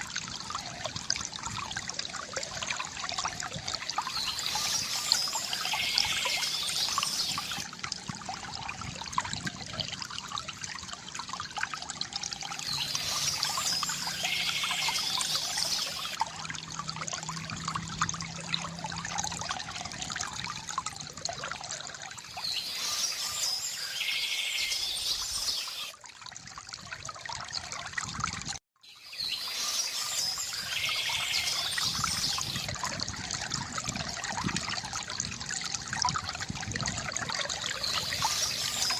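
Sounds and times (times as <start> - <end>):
water trickling from bamboo fountain: 0.0 - 38.9
bird song: 3.8 - 7.6, 12.6 - 16.2, 22.2 - 25.9, 28.8 - 32.7, 37.6 - 38.9.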